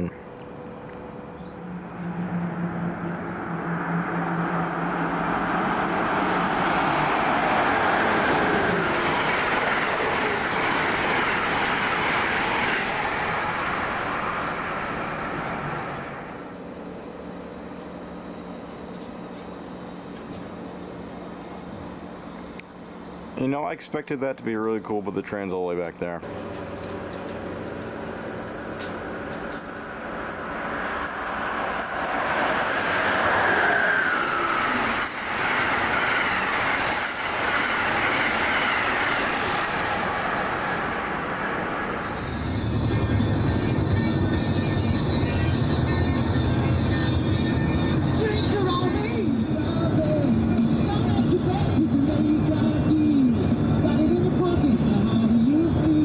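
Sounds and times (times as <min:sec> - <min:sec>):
steady hum: 0:00.0 - 0:08.7
high whine: 0:00.0 - 0:56.0
train passing: 0:00.0 - 0:56.0.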